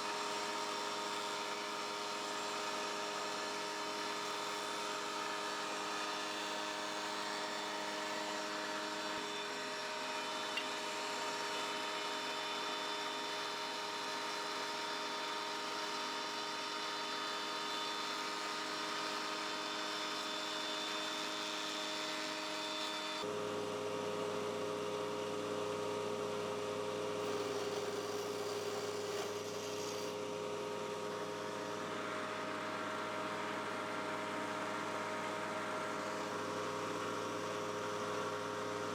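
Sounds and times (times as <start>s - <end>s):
electric motor hum: 27.2s - 30.2s.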